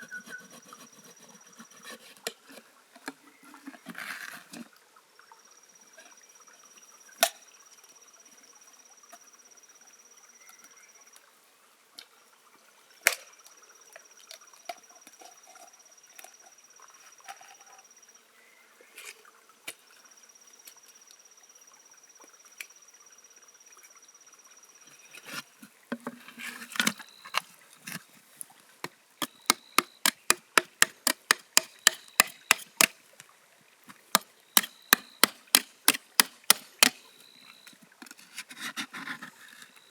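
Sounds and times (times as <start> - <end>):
fast run of sharp knocks: 29.2 - 32.9, 34.1 - 37.0.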